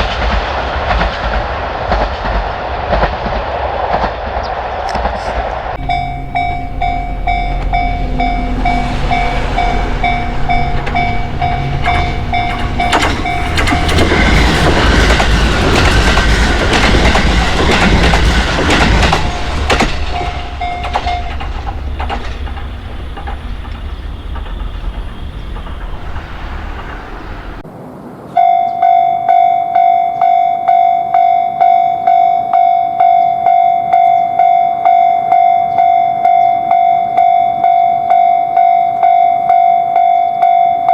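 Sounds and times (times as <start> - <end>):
train wheels clacking on rails: 0.0 - 27.6
diesel train passing: 5.6 - 29.9
level crossing bell ringing: 5.8 - 24.2.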